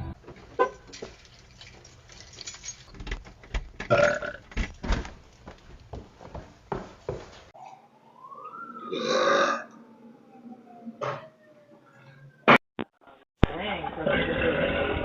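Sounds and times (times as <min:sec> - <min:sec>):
person burping: 0:03.9 - 0:04.4, 0:08.9 - 0:09.7.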